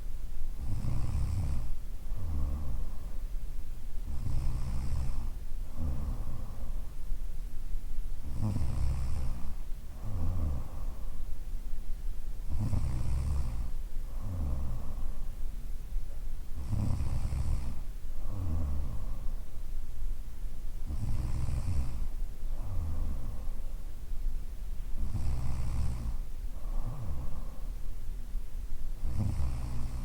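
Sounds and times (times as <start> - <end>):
woman snoring: 0.6 - 3.1, 4.1 - 6.7, 8.2 - 11.0, 12.5 - 15.0, 16.6 - 19.3, 20.8 - 23.5, 25.0 - 27.6, 29.0 - 30.0.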